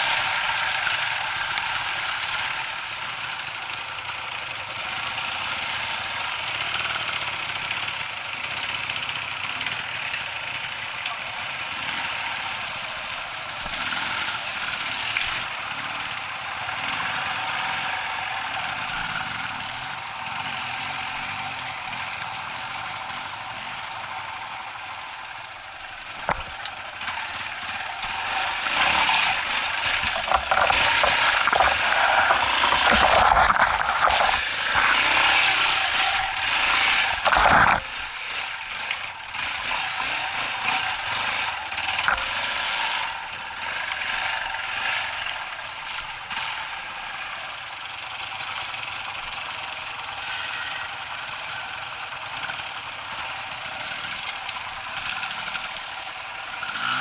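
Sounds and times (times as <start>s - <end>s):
motorcycle engine revving: 0.0s - 57.0s
mechanical rattling and scraping: 28.0s - 38.2s.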